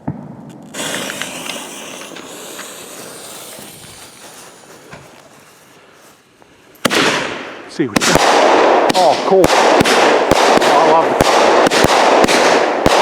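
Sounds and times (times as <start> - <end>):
faint crackles: 0.4 - 6.8
firework fuse hissing: 0.5 - 6.7.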